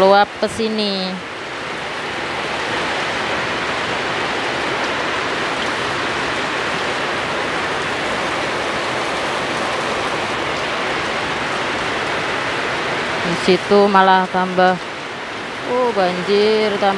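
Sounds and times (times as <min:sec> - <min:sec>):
heavy rain pouring: 0:00.0 - 0:16.9.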